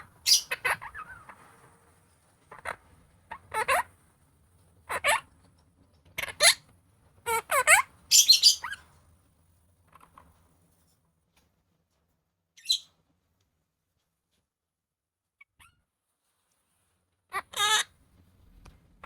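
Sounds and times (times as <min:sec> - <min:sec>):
parakeet chattering calls: 0:00.0 - 0:01.4, 0:02.5 - 0:03.9, 0:04.9 - 0:05.2, 0:06.2 - 0:06.6, 0:07.3 - 0:08.8, 0:12.6 - 0:12.9, 0:17.3 - 0:17.9
parakeet high squawk: 0:00.0 - 0:01.4, 0:02.5 - 0:03.9, 0:04.9 - 0:05.3, 0:06.2 - 0:06.6, 0:07.3 - 0:08.8, 0:12.6 - 0:12.9, 0:17.3 - 0:17.9.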